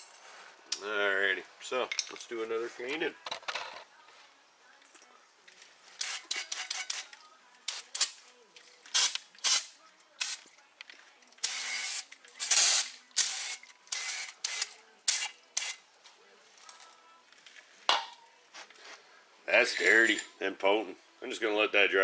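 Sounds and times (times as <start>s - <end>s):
aerosol spray hissing bursts: 9.0s - 10.4s, 11.4s - 15.8s.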